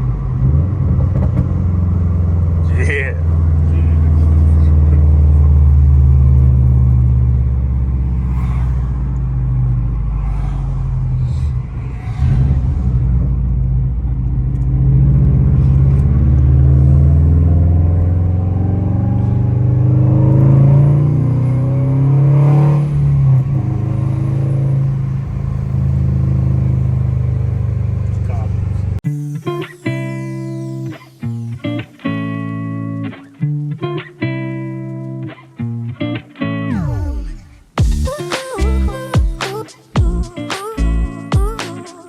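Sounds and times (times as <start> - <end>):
car engine revving: 0.0 - 32.0.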